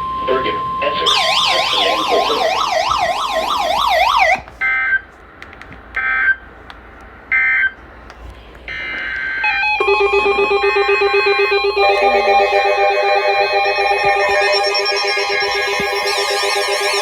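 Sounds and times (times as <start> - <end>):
two-tone data bursts: 0.0 - 3.3, 8.8 - 17.0
bright synthesizer tune: 0.0 - 4.1, 9.3 - 17.0.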